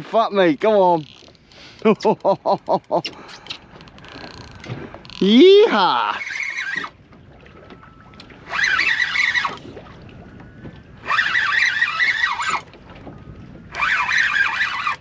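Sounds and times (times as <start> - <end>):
fishing reel drag screaming: 6.1 - 6.9, 8.4 - 9.6, 11.0 - 12.6, 13.7 - 15.0.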